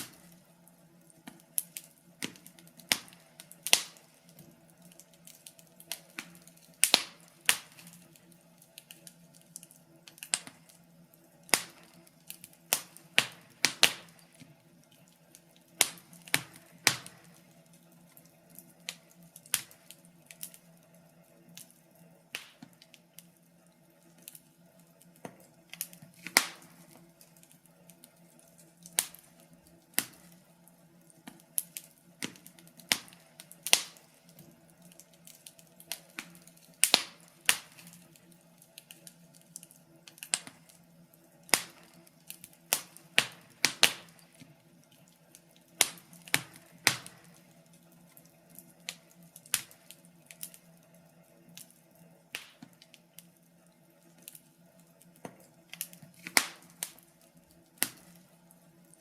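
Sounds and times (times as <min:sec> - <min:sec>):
wood fire crackling: 0:00.0 - 0:59.0.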